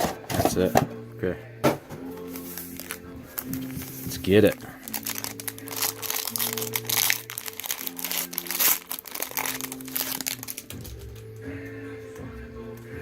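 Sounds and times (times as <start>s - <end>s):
background music sustained notes: 0.0s - 13.0s
plastic wrapper crinkling: 2.2s - 11.3s.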